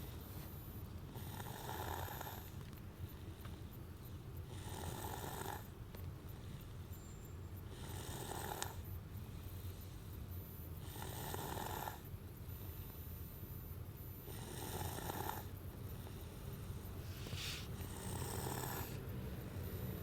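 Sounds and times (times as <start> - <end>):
child snoring: 1.2 - 2.5, 4.5 - 5.7, 7.7 - 8.9, 10.8 - 12.1, 14.3 - 15.6, 17.0 - 19.1
low rumble inside car: 15.7 - 20.0.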